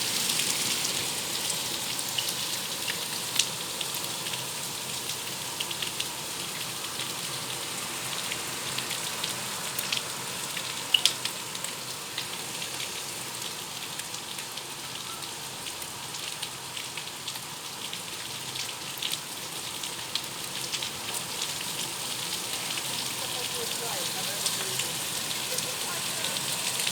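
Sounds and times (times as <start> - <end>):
steady rain hiss: 0.0 - 26.9
raindrops ticking: 18.6 - 26.9.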